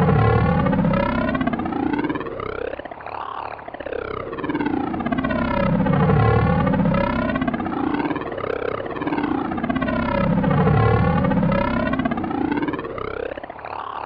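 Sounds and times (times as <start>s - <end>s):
buzzing drone hum: 0.0s - 14.0s
phasing whoosh: 4.4s - 13.1s.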